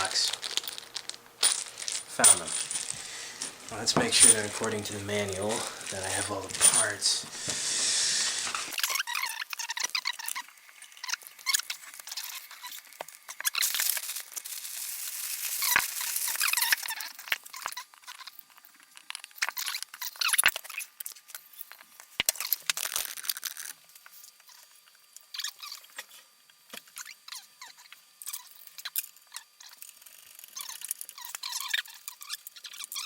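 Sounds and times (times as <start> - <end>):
plastic packaging crinkling: 0.0 - 7.2, 13.4 - 17.1.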